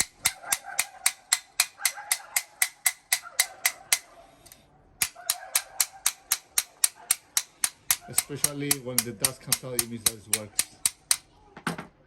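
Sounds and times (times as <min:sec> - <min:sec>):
light taps on metal bolt: 0:05.0 - 0:11.2.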